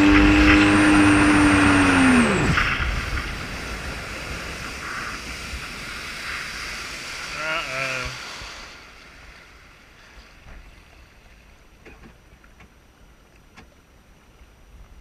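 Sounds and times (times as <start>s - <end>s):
jet ski engine winding down: 0.0s - 8.9s
water noise: 0.0s - 15.0s
wind: 0.0s - 15.0s.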